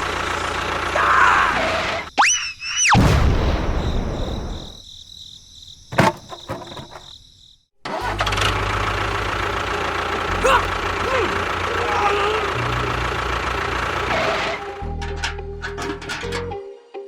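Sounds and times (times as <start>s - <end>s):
engine running: 0.0s - 2.1s, 7.8s - 16.6s
low engine drone: 8.1s - 16.3s.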